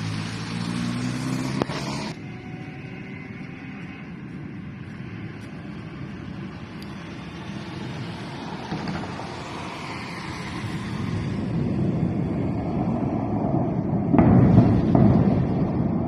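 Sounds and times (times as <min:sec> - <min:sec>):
low rumbling roar: 0:00.0 - 0:16.0
loud explosion blast: 0:11.6 - 0:16.0.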